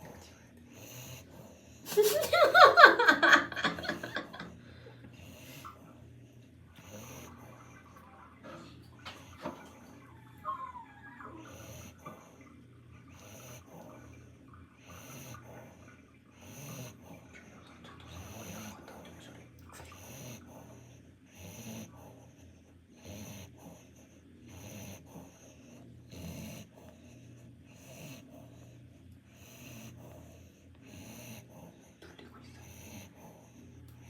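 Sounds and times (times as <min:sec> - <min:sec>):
dog snoring faintly: 0:00.0 - 0:01.9, 0:03.9 - 0:34.0
low steady hum: 0:00.0 - 0:34.0.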